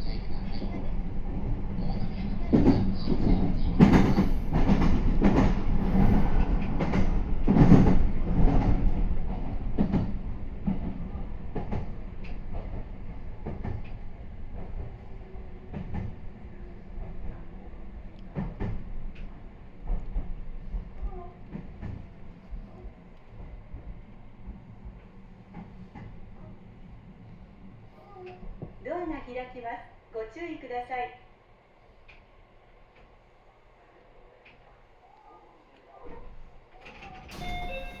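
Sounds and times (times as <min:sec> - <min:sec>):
train wheels knocking over rail joints: 0:02.5 - 0:11.0
electric train running: 0:36.9 - 0:38.0.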